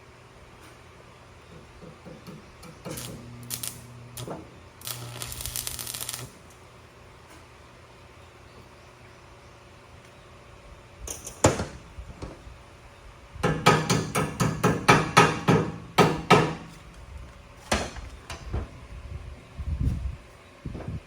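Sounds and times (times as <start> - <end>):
hammer striking steel: 13.4 - 16.8.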